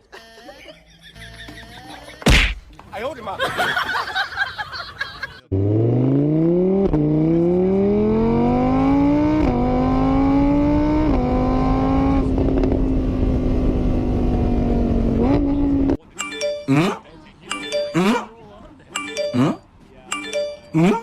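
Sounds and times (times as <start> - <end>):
car engine accelerating hard: 5.5 - 16.0.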